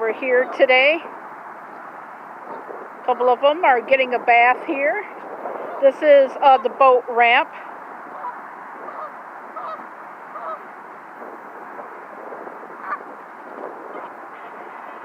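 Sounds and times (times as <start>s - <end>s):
geese honking: 8.0s - 10.8s, 12.0s - 15.0s.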